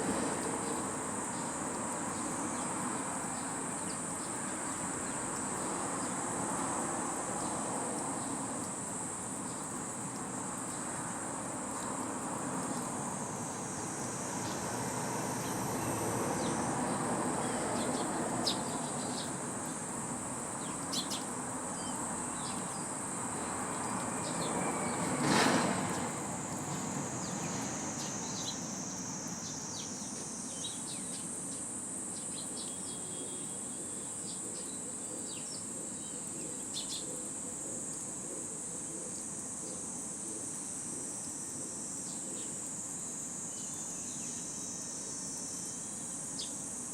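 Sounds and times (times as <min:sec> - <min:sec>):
high-pitched insect drone: 0:11.8 - 0:34.8
sparrow chirps: 0:17.4 - 0:19.4, 0:20.6 - 0:22.8, 0:34.2 - 0:37.2.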